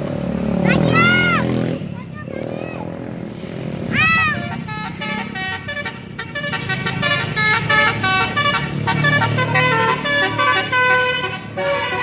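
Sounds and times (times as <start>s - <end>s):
engine running: 0.0s - 12.0s
bus horn playing melody: 4.1s - 12.0s.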